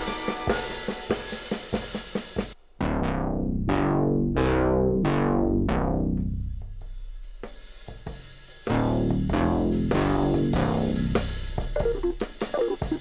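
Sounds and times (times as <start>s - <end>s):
drum beat: 0.0s - 2.6s, 6.4s - 13.0s.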